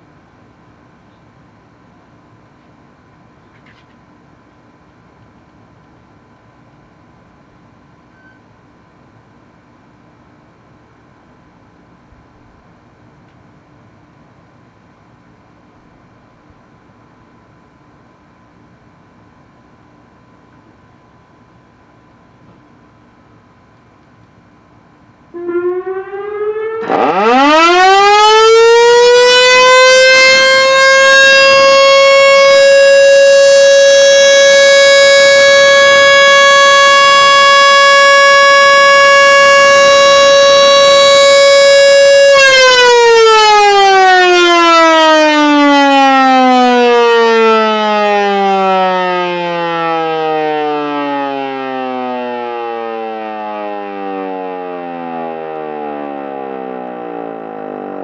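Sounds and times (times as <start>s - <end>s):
warning siren: 25.3s - 58.0s.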